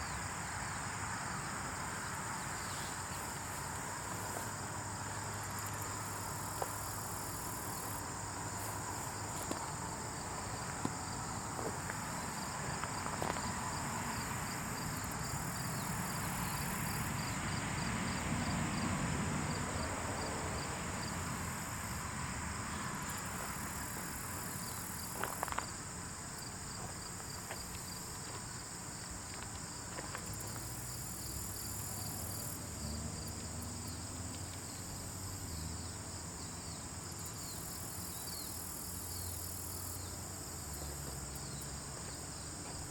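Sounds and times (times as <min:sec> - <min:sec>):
crickets chirring: 0:00.0 - 0:42.9
faint ticks: 0:34.3 - 0:34.7.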